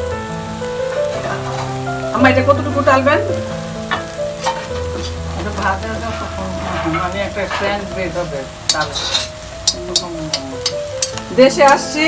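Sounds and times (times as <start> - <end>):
fish sizzling in a pan: 0.0 - 12.0
spatula tapping pan: 3.9 - 6.0, 8.6 - 12.0.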